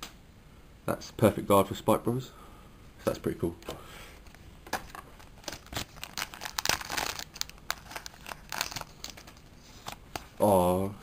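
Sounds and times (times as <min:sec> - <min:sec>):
wrapper crinkling and tearing: 0:05.2 - 0:10.0.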